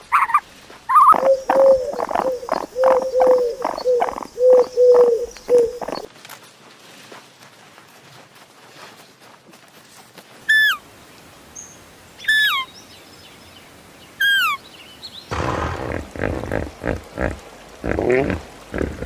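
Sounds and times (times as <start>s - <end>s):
rough animal calls: 0.0s - 6.1s, 15.3s - 19.0s.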